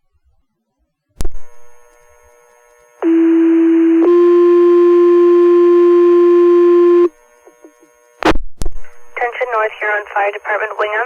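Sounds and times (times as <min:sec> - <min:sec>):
radio paging tones: 0:03.0 - 0:11.0
sharp radio clicks: 0:07.4 - 0:11.0.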